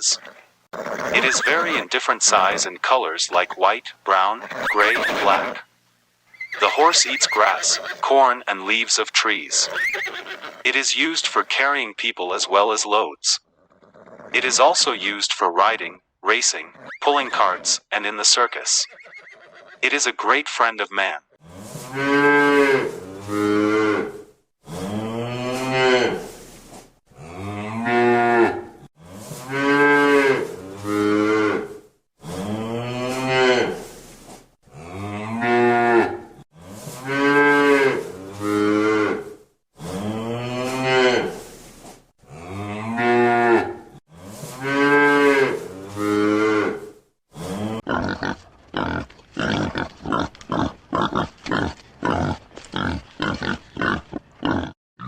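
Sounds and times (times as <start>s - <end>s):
cow mooing: 0.0s - 2.7s, 21.4s - 26.2s, 27.2s - 28.8s, 29.5s - 33.8s, 34.7s - 36.3s, 37.0s - 41.4s, 42.3s - 46.9s.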